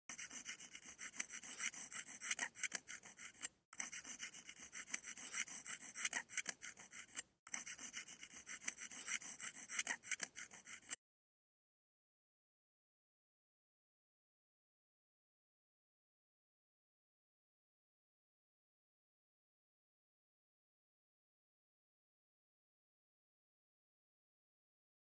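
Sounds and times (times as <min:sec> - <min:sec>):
squeaky scraper scratching: 0:00.1 - 0:11.0.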